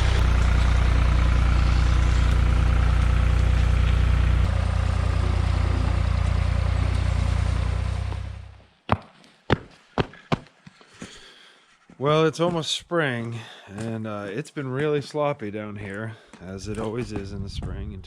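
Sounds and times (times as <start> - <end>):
large engine idling: 0.0 - 8.6.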